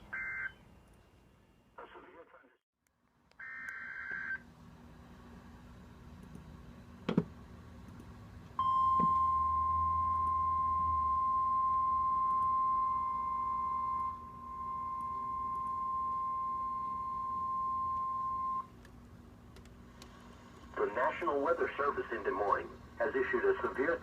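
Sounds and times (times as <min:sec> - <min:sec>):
steady alarm tone: 0:08.6 - 0:18.7.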